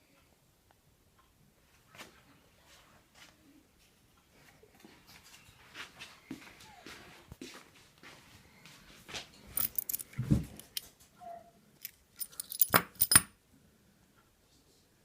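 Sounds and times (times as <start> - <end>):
light metallic clicks and clinks: 9.5 - 10.9, 11.8 - 13.3.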